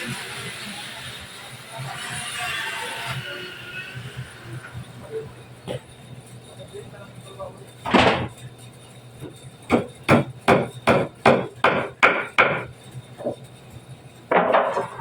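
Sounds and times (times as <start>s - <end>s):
hammer striking wood: 9.7s - 13.4s.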